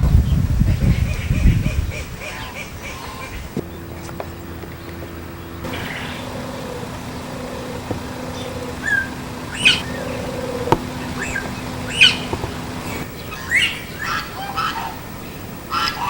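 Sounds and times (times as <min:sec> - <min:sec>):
steady low hum: 0:03.6 - 0:13.1
farm birds squawking and chirping: 0:05.6 - 0:13.0.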